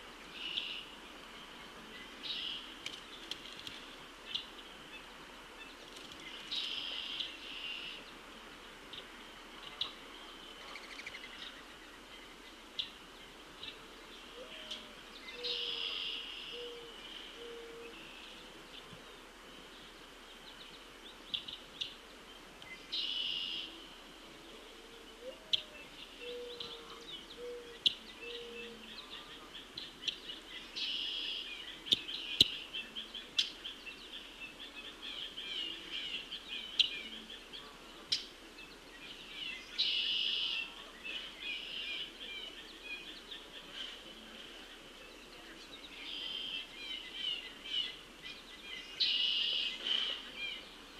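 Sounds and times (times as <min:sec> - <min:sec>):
bird cooing notes: 0:14.3 - 0:18.1, 0:24.4 - 0:29.3
blackbird buzzy trilled song: 0:25.5 - 0:37.5, 0:39.2 - 0:43.4, 0:45.8 - 0:50.7.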